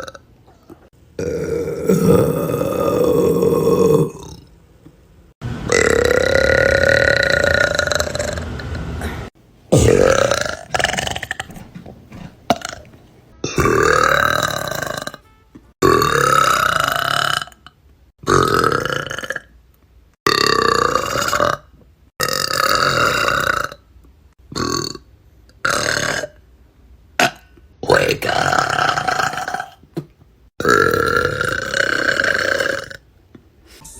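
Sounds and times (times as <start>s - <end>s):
girls burping: 9.7s - 15.1s, 30.6s - 33.0s.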